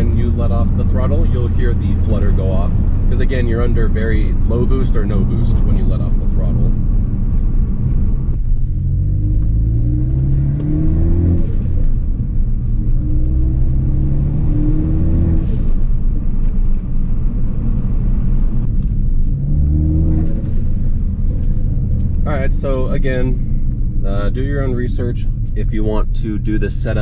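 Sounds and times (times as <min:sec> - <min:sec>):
car engine revving: 0:00.0 - 0:27.0.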